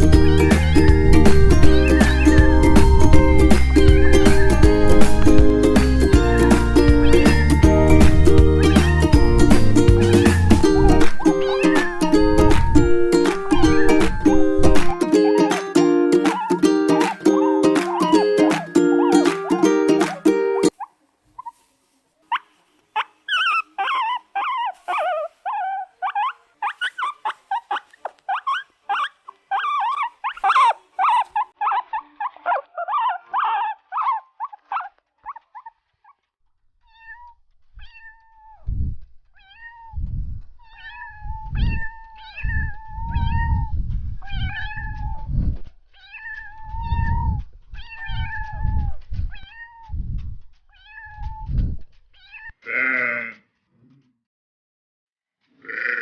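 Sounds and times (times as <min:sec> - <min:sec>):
cats meowing: 0:00.0 - 0:20.6, 0:36.9 - 0:38.6, 0:39.4 - 0:40.0, 0:40.6 - 0:45.3, 0:46.0 - 0:50.0, 0:50.8 - 0:51.5, 0:52.2 - 0:53.4.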